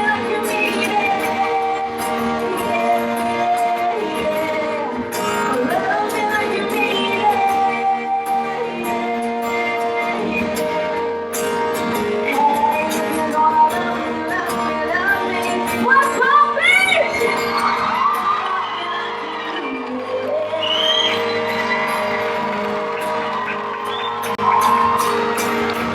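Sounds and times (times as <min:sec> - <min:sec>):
woman singing: 0:00.0 - 0:22.9
live band music: 0:00.0 - 0:25.9.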